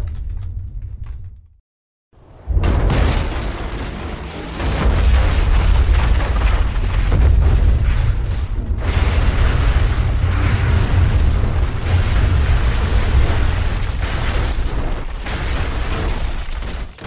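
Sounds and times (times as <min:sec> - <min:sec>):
debris crashing and crumbling: 0:02.3 - 0:17.0
deep heavy rumble: 0:04.6 - 0:14.7.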